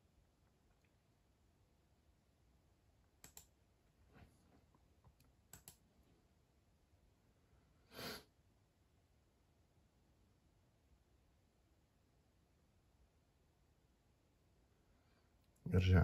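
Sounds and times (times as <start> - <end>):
computer mouse double-clicks: 3.2 - 3.5, 5.5 - 5.8.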